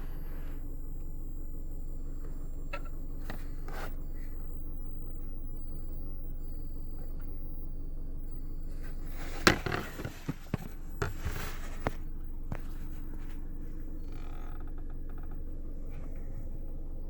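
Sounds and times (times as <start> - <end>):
car audio low hum: 0.0 - 17.0
faint high whine: 0.0 - 17.0
amplifier being handled knock: 9.2 - 13.2.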